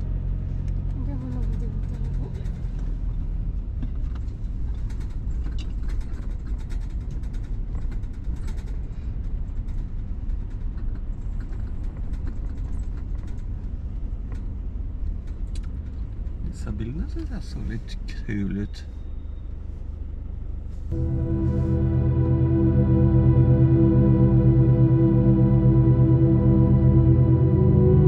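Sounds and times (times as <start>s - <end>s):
car engine and tyre rumble: 0.0s - 21.8s.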